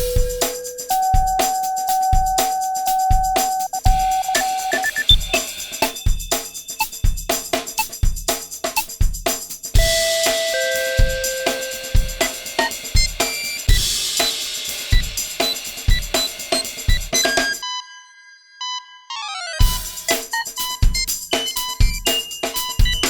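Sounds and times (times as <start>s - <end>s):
kick drum beat: 0.0s - 1.5s, 2.2s - 4.3s, 6.9s - 12.4s
hi-hat: 0.0s - 17.5s
long electronic tones: 9.8s - 12.8s.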